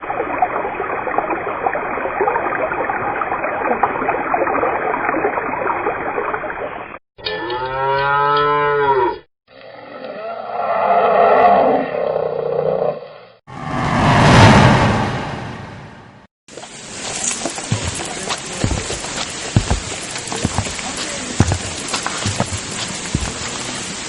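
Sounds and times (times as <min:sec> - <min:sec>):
cow mooing: 0:07.2 - 0:13.0
rushing river water: 0:16.5 - 0:24.0.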